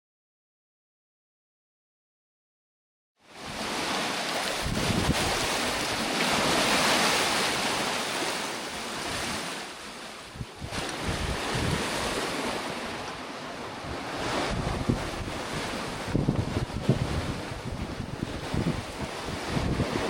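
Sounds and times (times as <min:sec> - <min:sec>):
sea water rushing around boat: 0:03.3 - 0:20.0
wind buffeting microphone: 0:04.4 - 0:07.5, 0:10.3 - 0:20.0.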